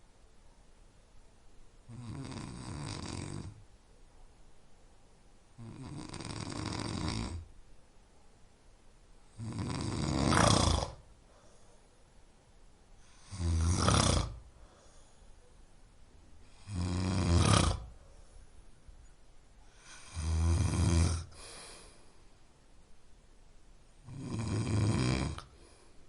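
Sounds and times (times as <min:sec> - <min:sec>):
person snoring: 0:01.9 - 0:03.6, 0:05.6 - 0:07.5, 0:09.3 - 0:11.0, 0:13.0 - 0:14.5, 0:16.5 - 0:18.0, 0:19.7 - 0:22.0, 0:24.0 - 0:25.9
quiet breathing: 0:09.1 - 0:23.0, 0:24.0 - 0:26.0.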